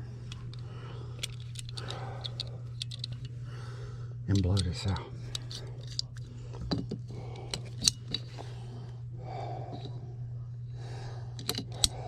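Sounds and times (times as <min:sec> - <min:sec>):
steady low hum: 0:00.0 - 0:12.0
hand tools clicking and clinking: 0:00.3 - 0:03.3, 0:04.3 - 0:08.4, 0:11.4 - 0:12.0.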